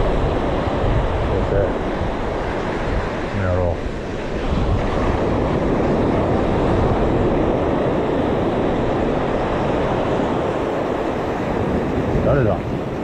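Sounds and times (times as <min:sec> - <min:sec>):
surf washing: 0:00.0 - 0:13.0
wind buffeting microphone: 0:00.0 - 0:13.0.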